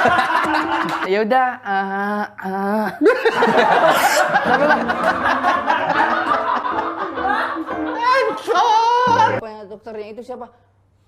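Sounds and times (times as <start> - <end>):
people laughing: 0.0 - 1.1, 3.0 - 9.4.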